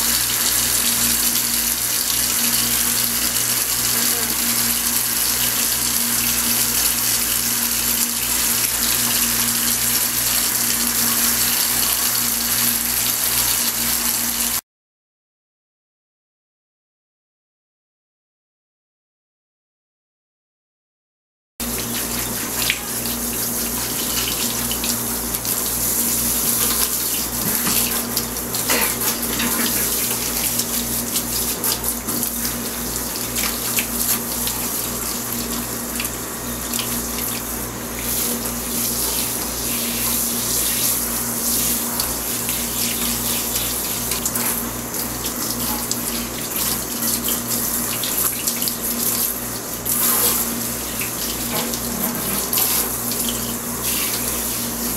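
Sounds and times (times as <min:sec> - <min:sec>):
tap water running into sink: 0:00.0 - 0:14.4, 0:21.6 - 0:54.9.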